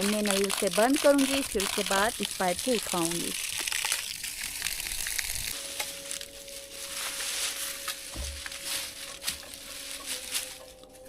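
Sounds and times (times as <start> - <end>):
water running through hose: 0.0 - 6.3.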